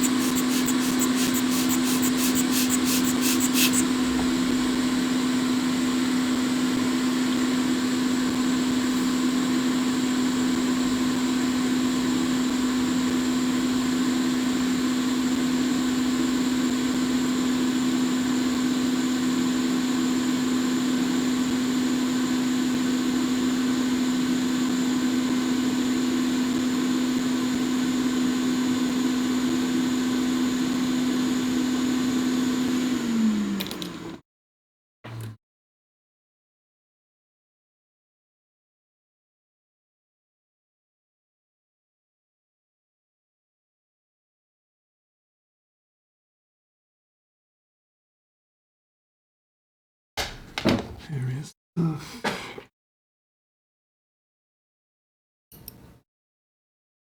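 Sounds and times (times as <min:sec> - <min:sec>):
electric fan motor humming: 0:00.0 - 0:04.0.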